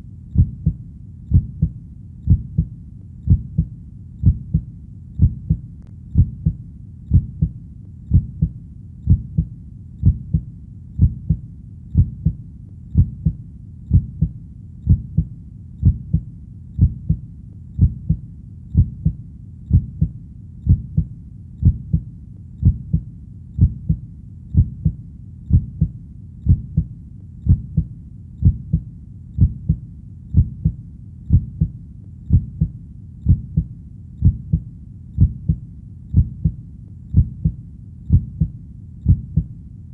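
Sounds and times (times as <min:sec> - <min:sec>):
faint low rumble: 0:00.0 - 0:39.9
heartbeat thumping: 0:00.3 - 0:39.5.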